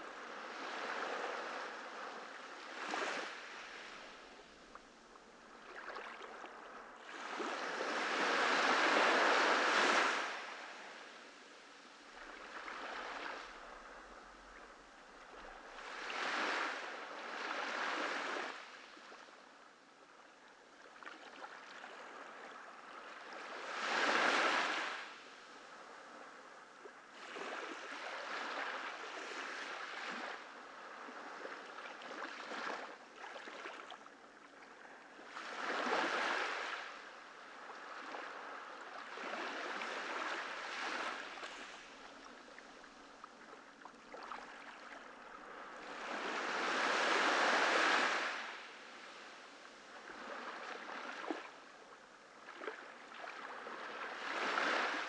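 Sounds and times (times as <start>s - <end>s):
ocean waves breaking on beach: 7.1s - 14.6s, 15.4s - 18.8s, 23.2s - 25.3s, 35.2s - 51.7s, 52.4s - 55.0s.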